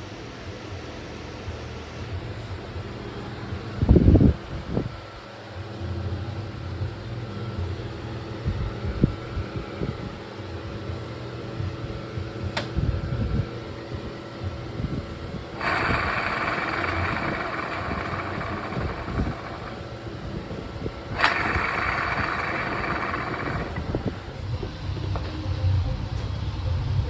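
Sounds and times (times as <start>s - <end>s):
scooter engine running: 15.6s - 24.4s.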